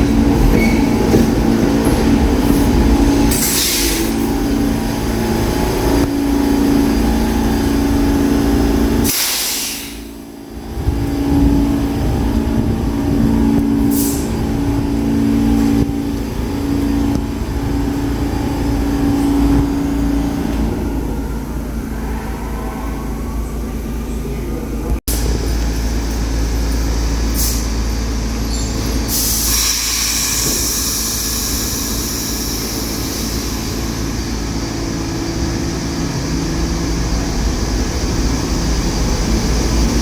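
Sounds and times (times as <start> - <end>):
subway train equipment humming: 0.0 - 40.0
air brakes hissing: 2.4 - 4.5, 9.0 - 10.3, 13.8 - 14.4, 25.1 - 34.2.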